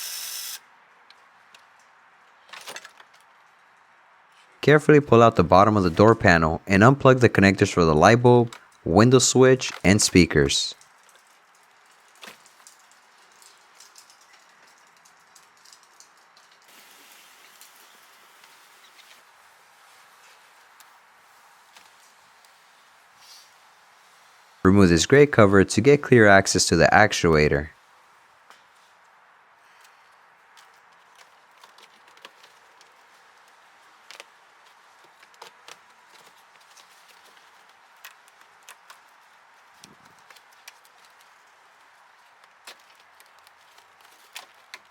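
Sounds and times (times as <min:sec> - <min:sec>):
low steady hiss: 0:00.0 - 0:31.5.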